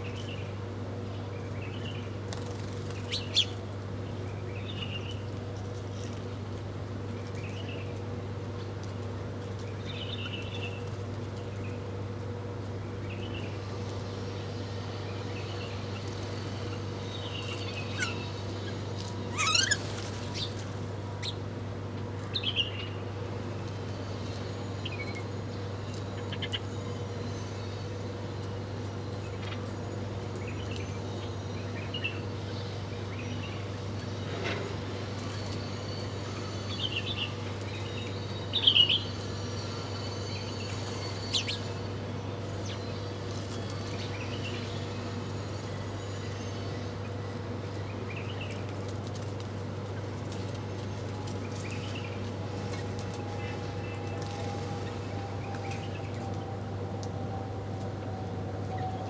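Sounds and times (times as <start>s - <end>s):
small birds chirping: 15.4s - 21.4s.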